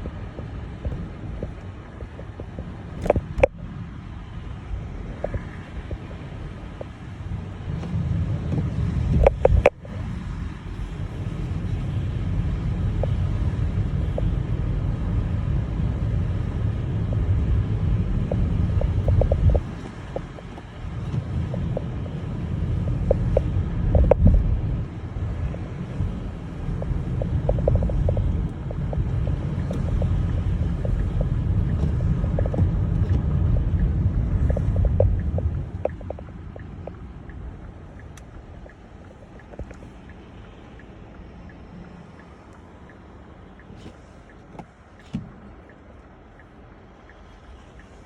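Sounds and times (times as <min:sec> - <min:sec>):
car driving on snowy road: 0:00.0 - 0:48.0
faint ticks: 0:18.3 - 0:22.2, 0:25.3 - 0:48.0.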